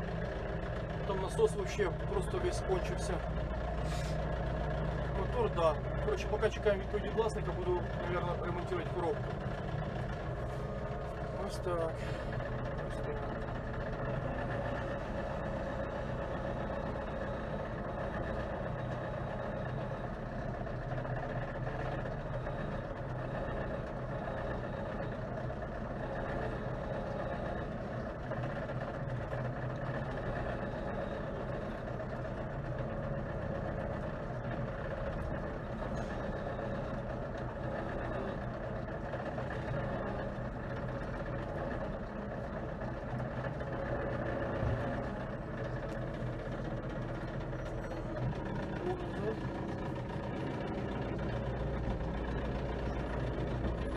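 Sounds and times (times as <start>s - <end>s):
vehicle engine droning: 0.0s - 53.9s.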